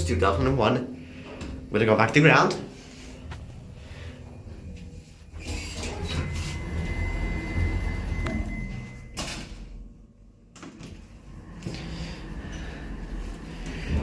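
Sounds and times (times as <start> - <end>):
elevator doors sliding shut: 1.2 - 9.8, 10.7 - 14.0
steady high tone: 3.1 - 9.2.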